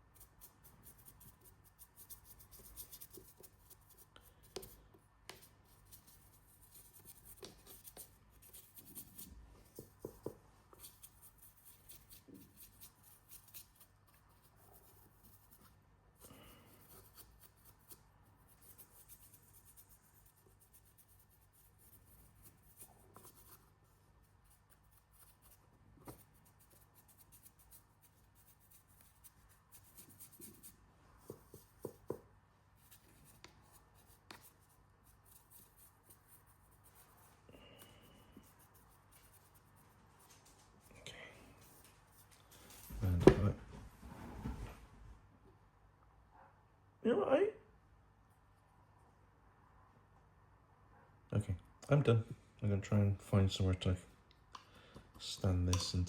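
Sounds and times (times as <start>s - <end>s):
paintbrush strokes: 0.0s - 43.2s.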